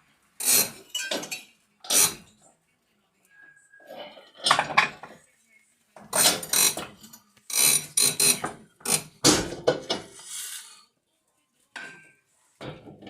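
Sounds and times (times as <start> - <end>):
ratchet wrench clicking: 7.5 - 9.1.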